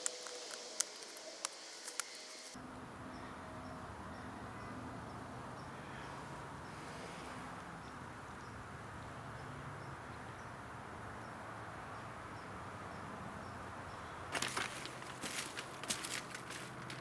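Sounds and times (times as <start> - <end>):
sharp crackles and rustles: 0.0 - 2.6, 14.3 - 17.0
outdoor background hiss: 0.0 - 17.0.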